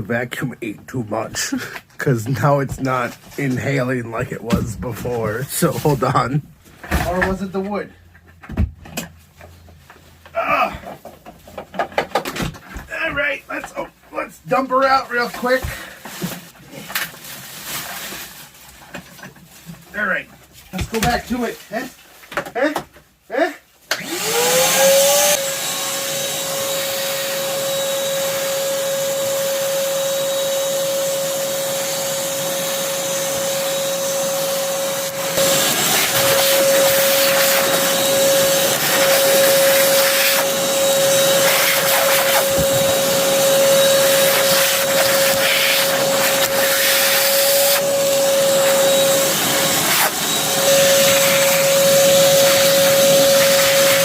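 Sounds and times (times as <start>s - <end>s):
shop vacuum motor whine: 23.9s - 54.0s.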